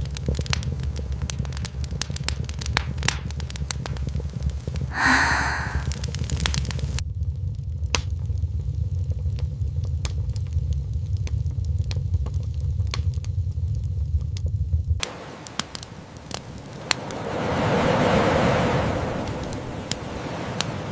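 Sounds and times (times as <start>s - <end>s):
campfire crackling and popping: 0.0s - 7.0s, 15.0s - 20.9s.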